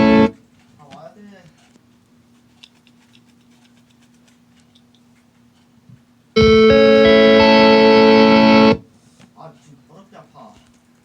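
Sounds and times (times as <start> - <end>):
computer startup chord: 0.0 - 0.3, 6.4 - 8.8.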